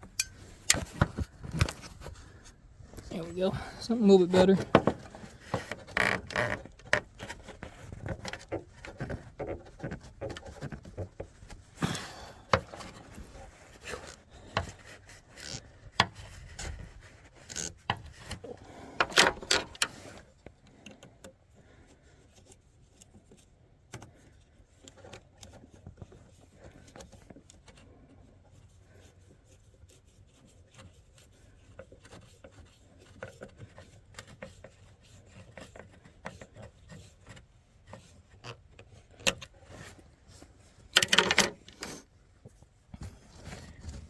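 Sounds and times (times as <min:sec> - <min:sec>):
tools clicking and scraping: 0:00.0 - 0:02.1, 0:17.4 - 0:20.3, 0:40.8 - 0:42.1.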